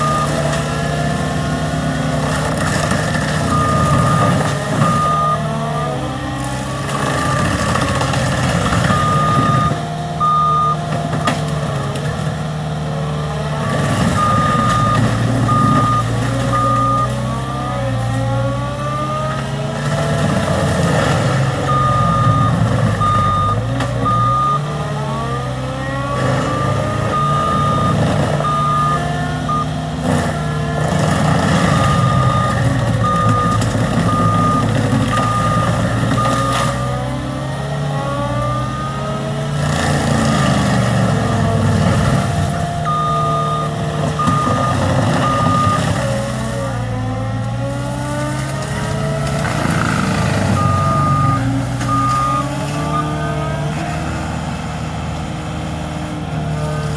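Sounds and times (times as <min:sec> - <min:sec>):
diesel engine revving: 0:00.0 - 0:56.9
backup alarm beeping: 0:03.5 - 0:06.0, 0:08.9 - 0:10.8, 0:14.2 - 0:17.8, 0:21.7 - 0:24.7, 0:26.5 - 0:29.8, 0:31.9 - 0:36.5, 0:42.9 - 0:45.8, 0:50.5 - 0:53.2.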